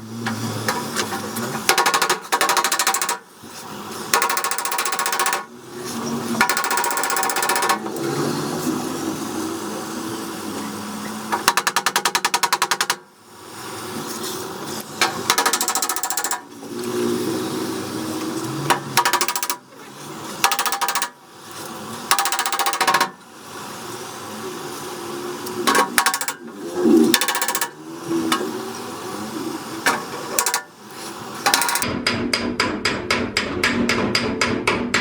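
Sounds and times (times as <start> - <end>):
hammer tapping on sheet metal: 6.4 - 7.9, 11.3 - 13.0, 15.0 - 16.5, 18.7 - 19.6, 20.4 - 21.2.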